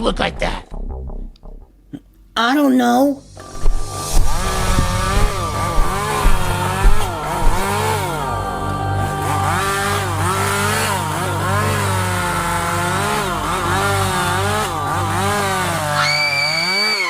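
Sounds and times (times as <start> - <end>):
chainsaw revving: 9.4 - 17.0.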